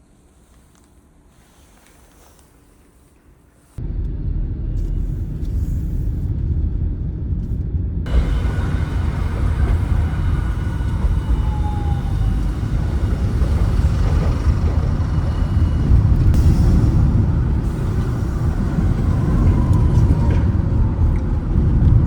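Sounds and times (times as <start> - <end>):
low rumble of car driving: 8.0 - 22.0.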